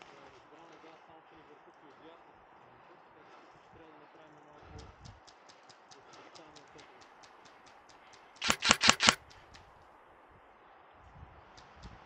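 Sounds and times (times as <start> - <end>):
faint regular ticks: 4.7 - 9.8
airsoft gun firing: 8.4 - 9.2.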